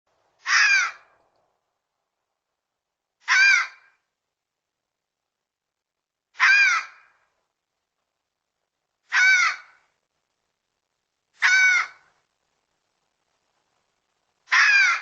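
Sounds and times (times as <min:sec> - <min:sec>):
fox calling hoarsely: 0:00.4 - 0:01.0, 0:03.2 - 0:04.0, 0:06.4 - 0:07.2, 0:09.1 - 0:09.8, 0:11.4 - 0:12.1, 0:14.5 - 0:15.0.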